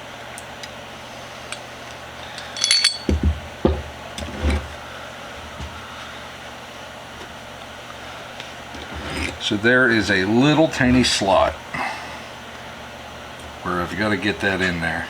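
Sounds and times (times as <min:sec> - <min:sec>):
light metal clicks: 0:01.5 - 0:03.1
metallic jingle: 0:02.2 - 0:03.3.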